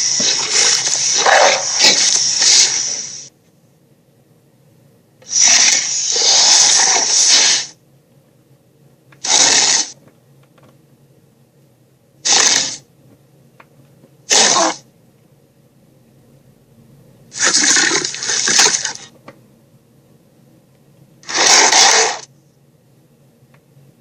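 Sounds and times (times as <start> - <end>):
creature hissing bursts: 0.0 - 3.3, 5.2 - 7.8, 9.2 - 10.0, 12.2 - 12.8, 14.3 - 14.8, 17.3 - 19.1, 21.2 - 22.3
low steady hum: 3.2 - 5.3, 7.8 - 9.2, 10.0 - 12.2, 12.9 - 17.4, 18.9 - 21.2, 22.3 - 24.0.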